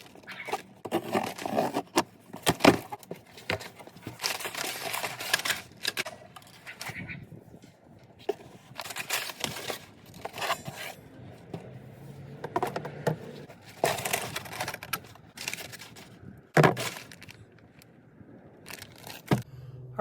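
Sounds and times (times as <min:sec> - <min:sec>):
objects rustling and clattering: 0:00.0 - 0:17.9, 0:18.6 - 0:19.5.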